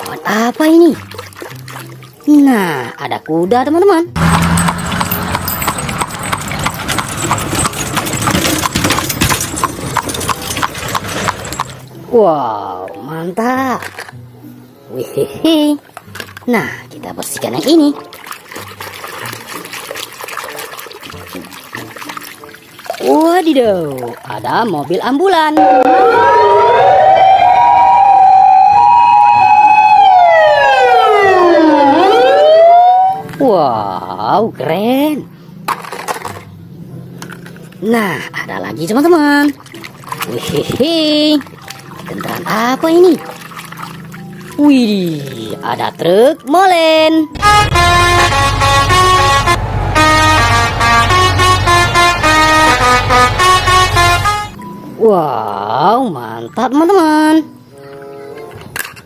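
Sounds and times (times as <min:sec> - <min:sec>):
ambulance siren wailing: 0:25.6 - 0:33.3, 0:47.4 - 0:54.6
steady two-note tone: 0:25.6 - 0:33.3, 0:47.4 - 0:54.8
low engine drone: 0:47.4 - 0:54.6
multi-tone horn playing a tune: 0:47.4 - 0:54.6.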